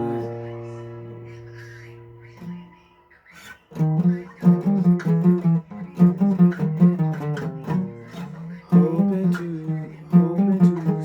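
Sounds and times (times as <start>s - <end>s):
person singing: 0.0s - 2.7s, 7.2s - 11.0s
guitar chords: 0.0s - 11.0s.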